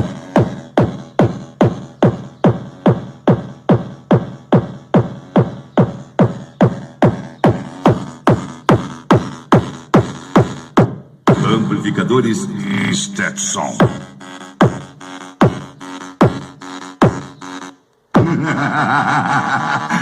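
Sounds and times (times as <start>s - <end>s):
electronic hit sweeping down: 11.3s - 14.8s.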